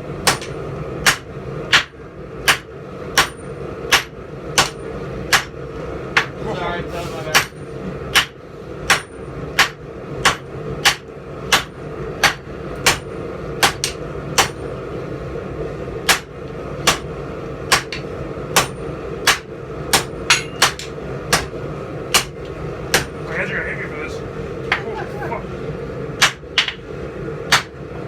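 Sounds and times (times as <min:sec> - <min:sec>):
hammer ringing on steel anvil: 0:20.3 - 0:20.8.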